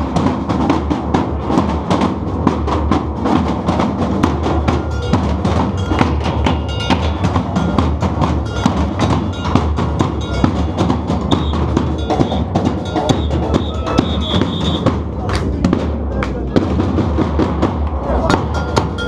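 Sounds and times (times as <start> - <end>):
deep bass drums: 0.0 - 19.0
samba percussion band drumming: 0.0 - 19.0
high steady tone: 10.2 - 14.9.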